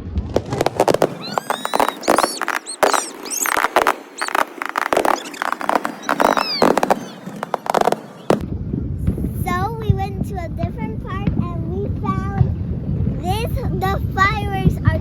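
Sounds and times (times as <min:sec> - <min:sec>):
fireworks crackling pops: 0:00.0 - 0:08.5
fireworks squealing whistles: 0:00.3 - 0:08.4.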